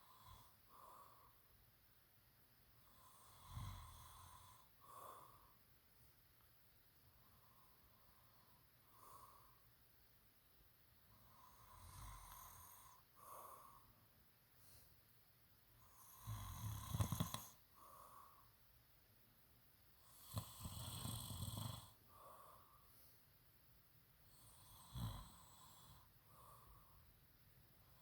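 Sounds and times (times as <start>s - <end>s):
quiet breathing: 0.0s - 18.9s, 19.9s - 28.0s
person snoring: 2.9s - 5.4s, 11.2s - 13.8s, 15.8s - 18.3s, 20.0s - 22.7s, 24.3s - 27.0s.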